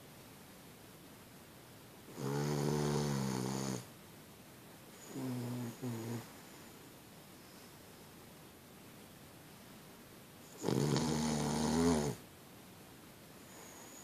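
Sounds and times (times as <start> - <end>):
dog snoring: 2.1 - 3.9, 5.0 - 6.4, 10.5 - 12.2, 13.5 - 14.0.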